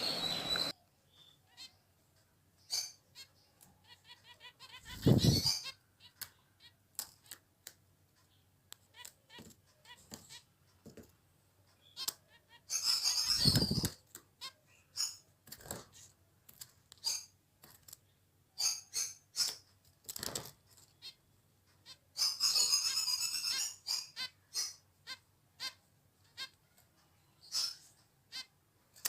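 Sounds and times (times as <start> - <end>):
finches chirping: 0.0 - 2.0, 2.6 - 7.4, 11.7 - 16.2, 18.0 - 19.7, 20.8 - 28.6.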